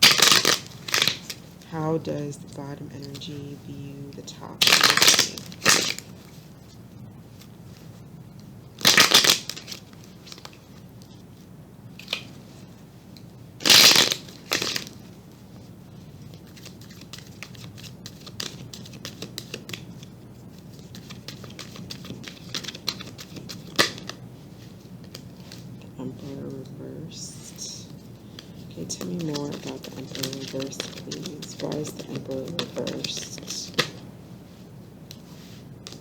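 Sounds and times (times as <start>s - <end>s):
cards riffle shuffling: 0.0s - 1.5s, 4.6s - 6.4s, 8.8s - 10.8s, 13.6s - 15.1s, 16.2s - 25.7s, 28.0s - 34.0s.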